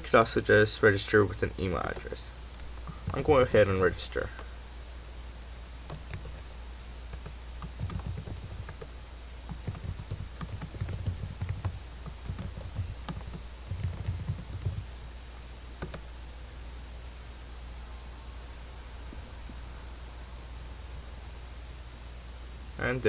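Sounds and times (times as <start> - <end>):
steady low hum: 0.0 - 23.0
typing on computer keyboard: 2.9 - 3.7, 5.9 - 6.4, 7.1 - 8.9, 9.5 - 14.8, 15.8 - 16.0.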